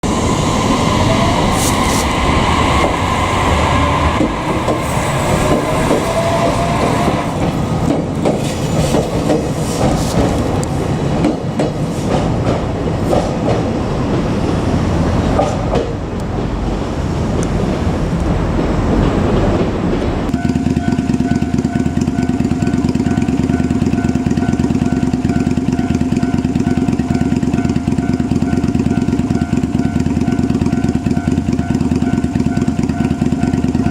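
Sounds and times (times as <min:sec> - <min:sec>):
train traction motors whining: 0:00.0 - 0:11.0
train wheels clicking on rail joints: 0:00.4 - 0:14.6, 0:15.2 - 0:33.9
level-crossing warning bell: 0:20.3 - 0:33.9.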